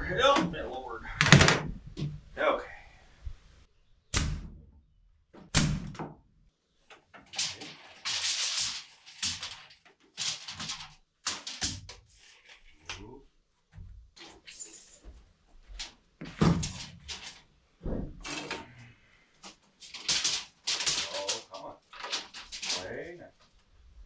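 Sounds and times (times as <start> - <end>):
wooden knocks and thunks: 0.3 - 2.4, 4.2 - 6.2, 16.2 - 17.2, 17.8 - 18.3.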